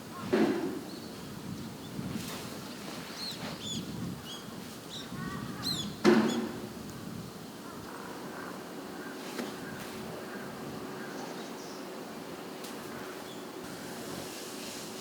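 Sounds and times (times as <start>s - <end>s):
small birds chirping: 2.6s - 6.6s
rush of sand: 13.1s - 15.0s.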